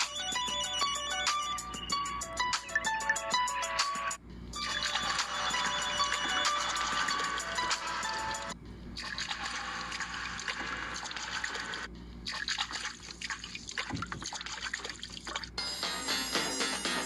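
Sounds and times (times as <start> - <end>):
musical ringtone: 0.0 - 8.6, 15.6 - 17.0
trickling water ringtone: 4.6 - 8.5.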